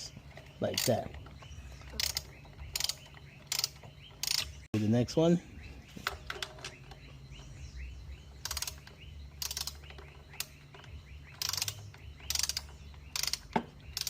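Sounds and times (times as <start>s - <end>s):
socket ratchet clicking: 1.8s - 4.6s, 8.4s - 14.0s.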